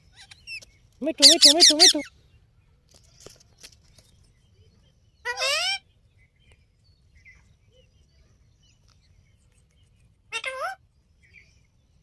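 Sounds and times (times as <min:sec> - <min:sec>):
parrot wavering call: 0:01.2 - 0:02.1
faint soft chirps: 0:02.2 - 0:05.2.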